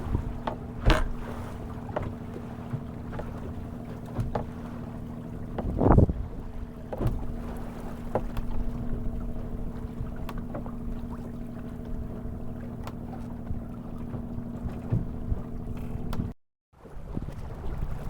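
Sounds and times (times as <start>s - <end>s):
water noise: 0.0s - 18.0s
wind: 0.0s - 18.0s
short sharp knocks: 0.4s - 1.4s.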